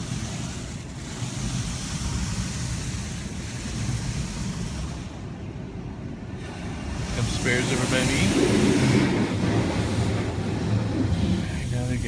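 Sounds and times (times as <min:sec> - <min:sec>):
water jets spraying on car: 0:00.0 - 0:05.4, 0:06.4 - 0:12.0.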